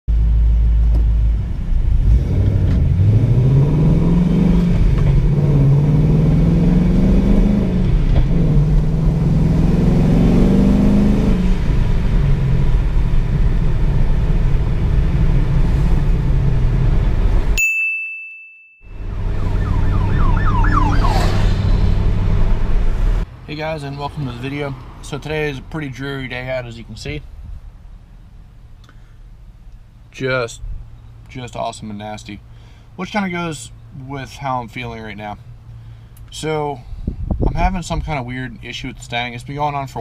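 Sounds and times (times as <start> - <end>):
car engine accelerating hard: 0.2 - 17.6.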